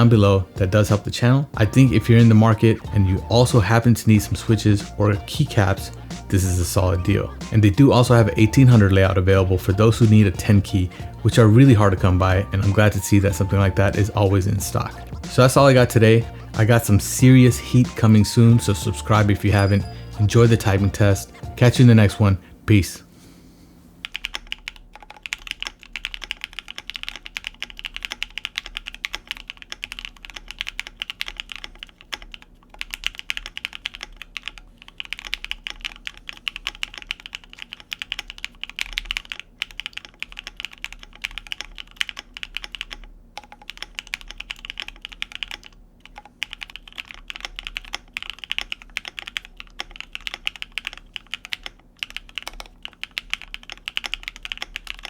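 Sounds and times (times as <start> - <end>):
fast typing on mechanical keyboard: 1.6 - 22.0, 24.0 - 55.0.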